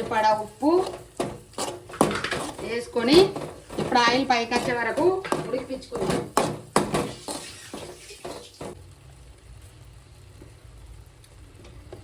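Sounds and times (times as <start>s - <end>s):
metal spoon scraping a pan: 0.0s - 8.8s.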